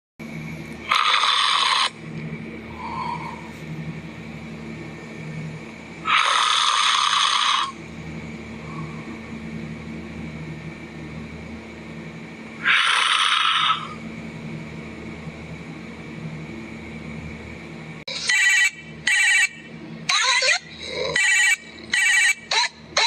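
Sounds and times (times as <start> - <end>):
steady low hum: 0.2 - 23.0
person snoring loudly: 0.9 - 1.9, 6.0 - 7.8, 12.6 - 14.0.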